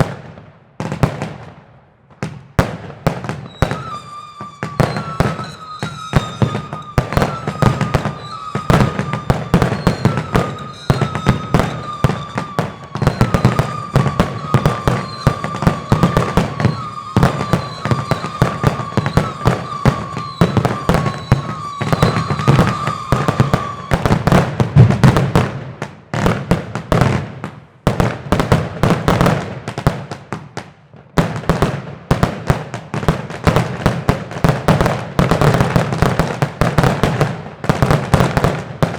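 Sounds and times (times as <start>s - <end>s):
firecracker cracks: 2.4s - 27.5s
rocket bangs: 2.6s - 27.2s
high whistling tone: 3.5s - 25.0s.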